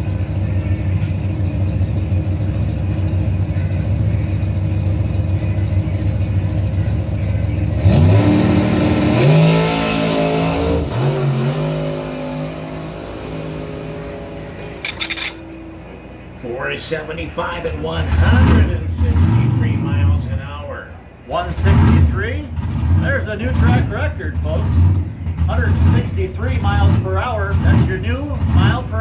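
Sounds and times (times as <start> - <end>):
drag car engine at full throttle: 0.0 - 14.6, 17.6 - 20.4, 21.3 - 29.0.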